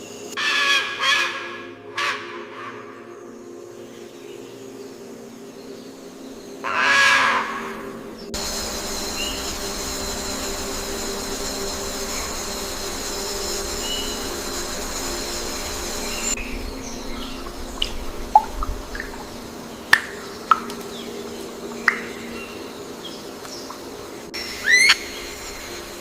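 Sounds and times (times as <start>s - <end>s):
even hiss: 3.7s - 26.0s
high insect buzzing: 6.6s - 26.0s
harsh bird call: 24.5s - 25.4s.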